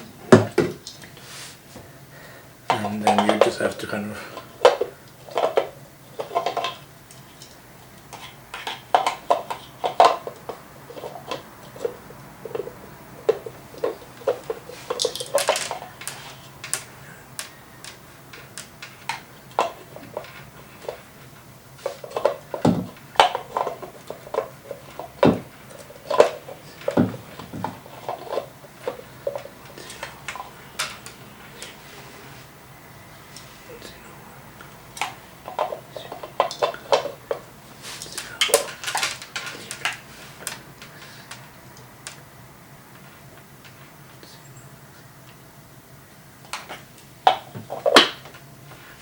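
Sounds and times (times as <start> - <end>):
small hard parts clattering: 2.7 - 31.8, 34.6 - 42.2.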